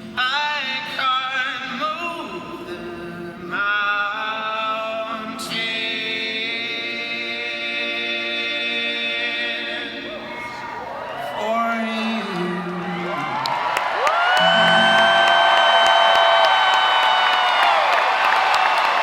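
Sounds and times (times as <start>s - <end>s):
voices singing in harmony: 2.0s - 13.5s, 14.4s - 16.6s.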